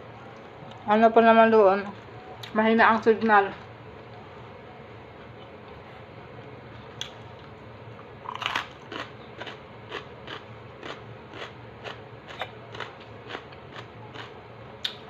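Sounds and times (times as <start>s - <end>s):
crunching and chewing crispy food: 8.2s - 15.0s.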